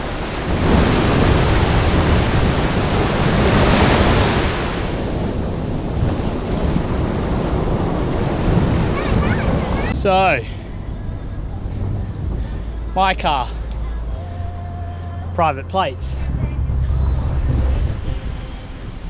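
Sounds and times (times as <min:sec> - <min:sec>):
wind buffeting microphone: 0:00.0 - 0:10.0
ocean waves breaking: 0:00.0 - 0:10.8.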